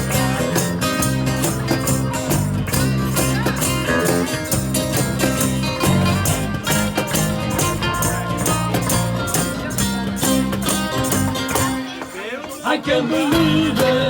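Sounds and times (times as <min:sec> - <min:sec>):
acoustic band playing: 0:00.0 - 0:14.0.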